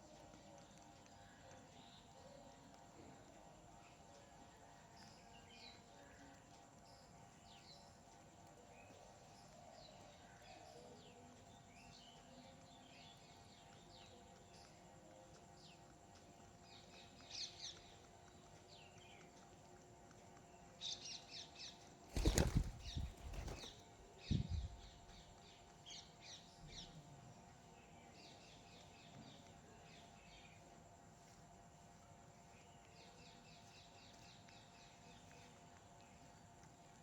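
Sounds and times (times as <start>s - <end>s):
small birds chirping: 0.0s - 37.0s
flurry of bird wingbeats: 22.1s - 24.9s.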